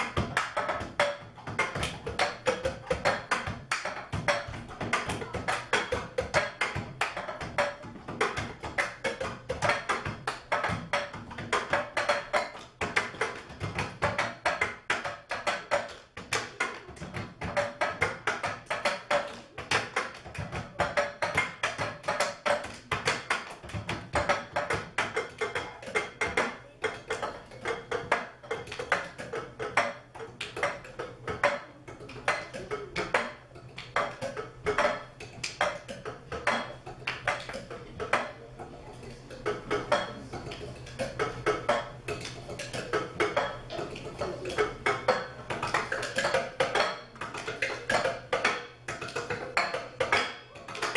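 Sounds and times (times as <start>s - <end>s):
cup percussion ensemble: 0.0s - 50.9s.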